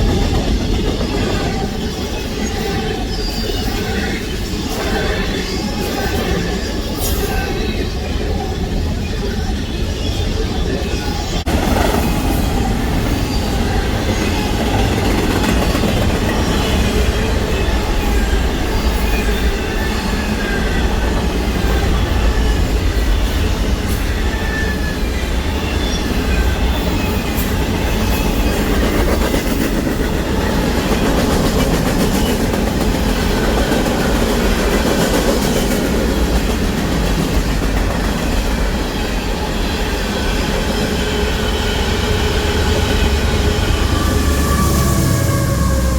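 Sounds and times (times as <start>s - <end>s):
steel wheels rolling on rails: 0.0s - 45.9s
high wheel squeals: 38.8s - 45.9s.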